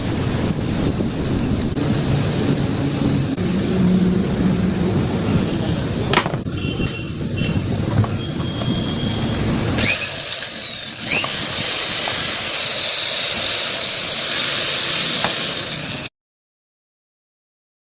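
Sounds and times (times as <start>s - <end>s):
power tool motor rumbling: 9.7s - 16.1s.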